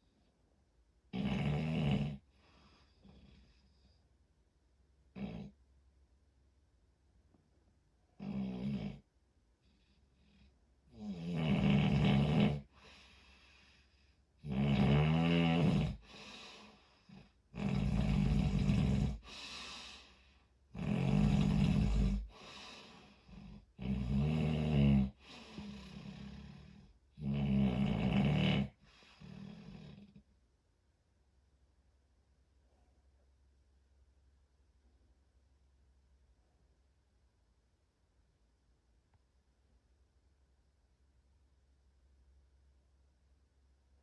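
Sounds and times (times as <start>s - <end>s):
person snoring: 11.0s - 12.9s, 14.4s - 20.2s, 20.8s - 30.2s.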